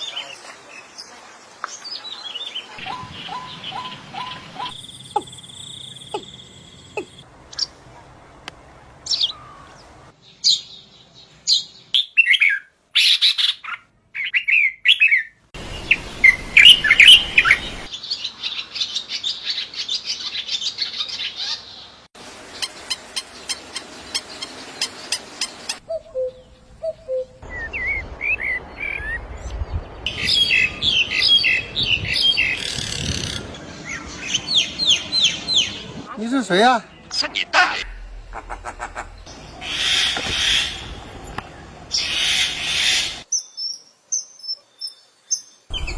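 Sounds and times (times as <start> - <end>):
small birds chirping: 0.0 - 7.8, 9.0 - 21.9, 36.8 - 45.9.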